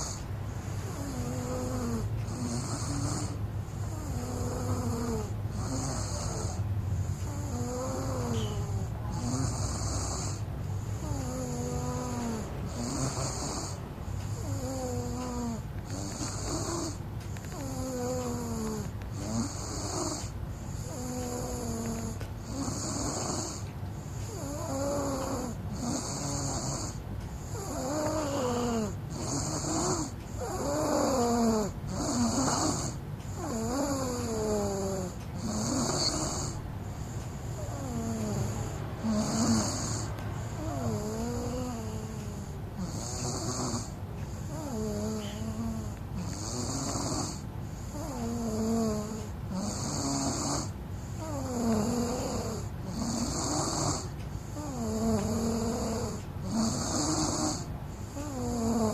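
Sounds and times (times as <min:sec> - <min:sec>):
person snoring with whistling tone: 0:07.4 - 0:10.4, 0:35.5 - 0:36.5.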